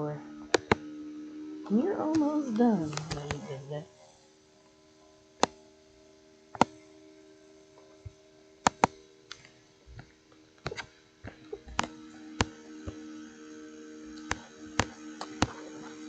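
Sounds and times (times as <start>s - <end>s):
faint steady hum: 0.0s - 16.0s
computer mouse clicking: 0.5s - 0.8s, 8.6s - 9.4s, 11.7s - 13.0s, 14.2s - 15.6s.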